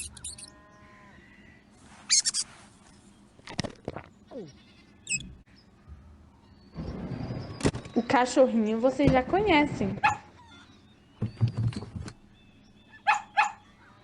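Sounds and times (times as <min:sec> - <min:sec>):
mouse squeaks: 0:00.0 - 0:00.5, 0:02.1 - 0:02.5, 0:04.5 - 0:05.4.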